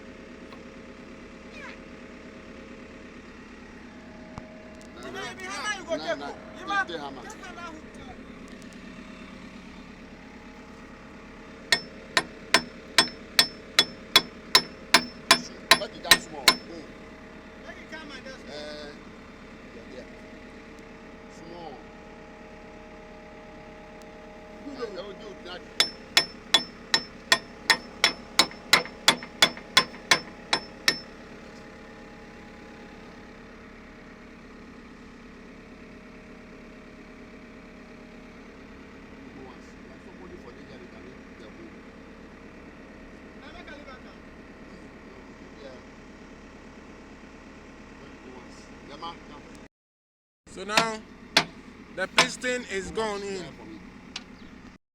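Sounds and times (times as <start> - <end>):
diesel engine idling: 0.0 - 40.3
hammer striking metal pin: 11.8 - 16.7, 25.8 - 31.2, 50.8 - 51.6, 52.2 - 52.4.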